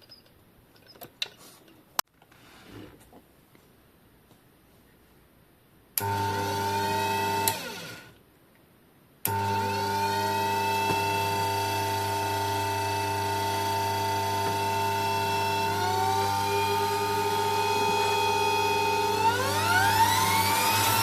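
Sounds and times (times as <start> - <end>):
bench grinder motor whine: 6.0 - 8.2, 9.3 - 21.0.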